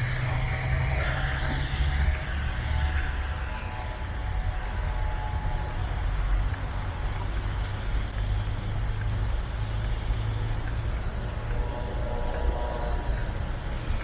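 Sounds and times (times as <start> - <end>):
large vehicle engine passing: 0.0 - 8.2.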